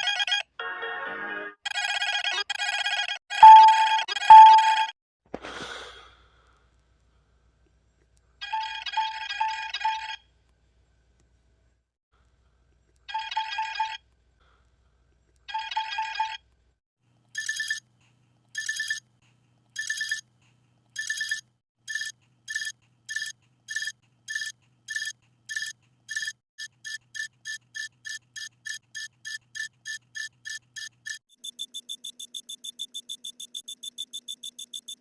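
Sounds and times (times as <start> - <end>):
electronic ringtone rings: 3.4 - 4.9, 17.4 - 17.8, 18.6 - 19.0, 19.8 - 20.2, 21.0 - 35.0.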